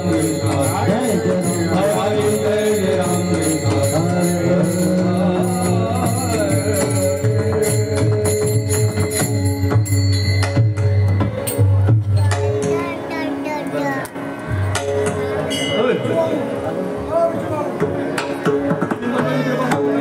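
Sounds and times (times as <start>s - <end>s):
person singing devotional melody: 0.0s - 9.8s
hand cymbals struck: 0.0s - 12.9s, 14.5s - 16.2s.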